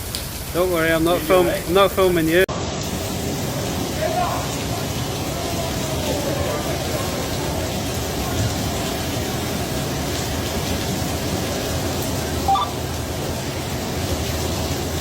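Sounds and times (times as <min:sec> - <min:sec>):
flood water rushing: 0:00.0 - 0:15.0
high chirp: 0:12.5 - 0:12.8.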